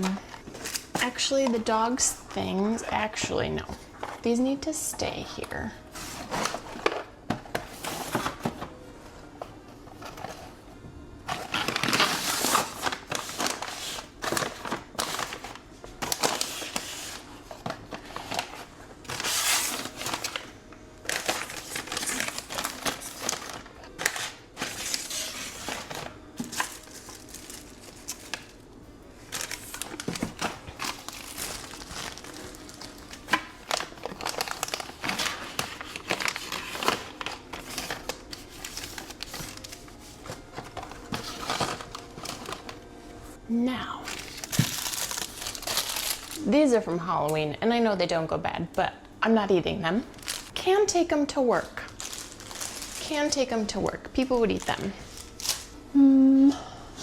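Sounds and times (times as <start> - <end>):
plastic packaging crinkling: 0.0 - 4.4, 5.3 - 8.6, 11.2 - 28.6, 29.2 - 42.8, 44.0 - 46.4, 50.1 - 50.7, 51.5 - 55.8.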